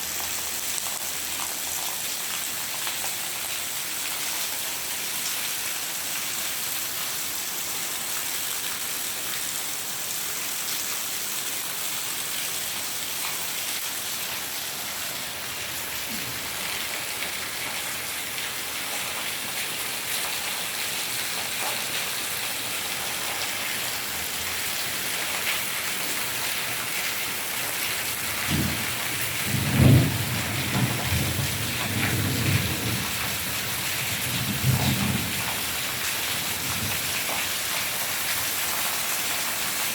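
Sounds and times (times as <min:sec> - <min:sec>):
heavy rain: 0:00.0 - 0:39.9
low rumbles of thunder: 0:28.4 - 0:35.6.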